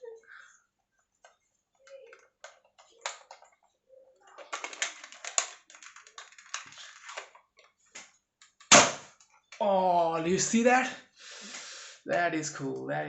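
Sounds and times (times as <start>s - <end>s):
small plastic clicks and rattles: 1.2s - 9.6s.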